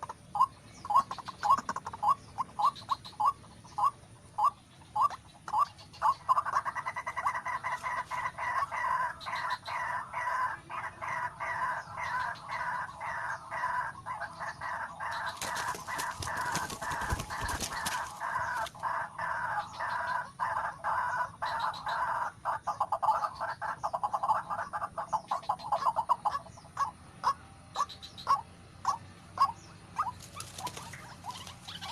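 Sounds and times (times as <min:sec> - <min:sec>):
bird rapid croaking call: 0:00.0 - 0:31.9.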